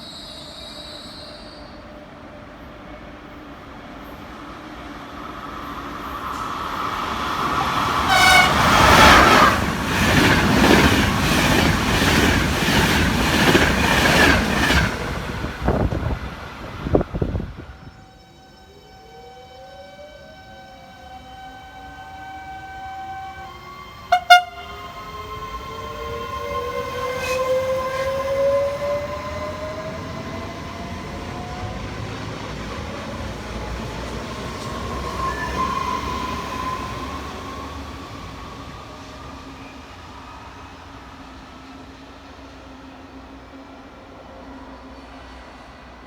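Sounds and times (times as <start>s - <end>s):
train rumble: 1.1s - 18.3s, 20.1s - 46.0s
train horn blasts: 8.0s - 9.6s, 20.2s - 25.4s, 26.4s - 28.2s.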